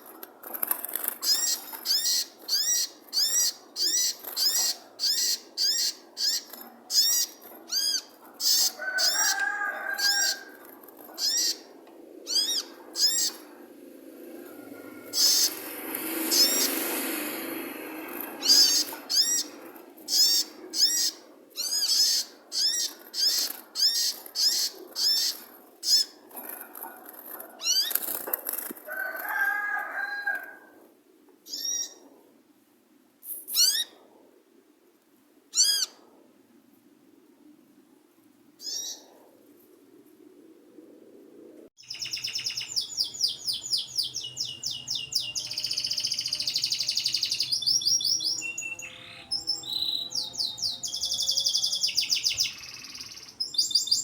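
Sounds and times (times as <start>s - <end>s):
faint steady background noise: 0.0s - 54.0s
lower bird call: 11.2s - 26.2s, 41.8s - 54.0s.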